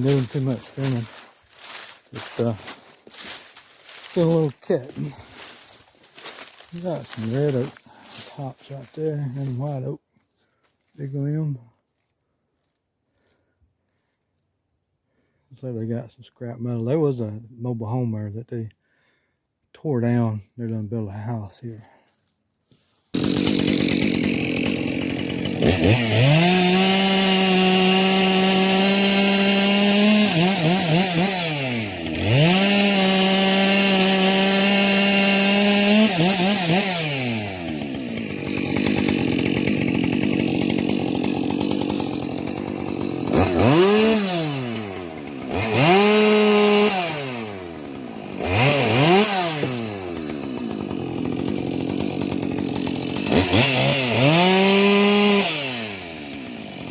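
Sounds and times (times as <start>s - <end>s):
chainsaw revving and idling: 0.0s - 10.0s, 10.8s - 11.7s, 23.1s - 56.9s.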